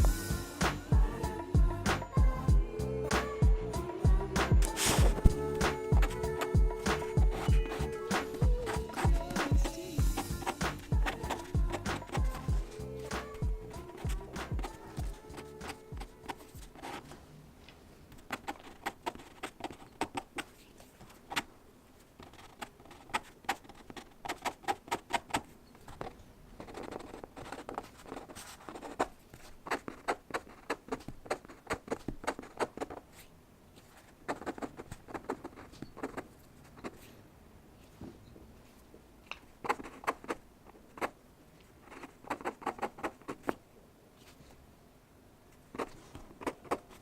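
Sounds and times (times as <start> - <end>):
pen scratching on paper: 4.4 - 17.2, 18.1 - 21.5, 22.2 - 37.1, 39.6 - 41.2, 41.8 - 43.6, 45.7 - 47.0.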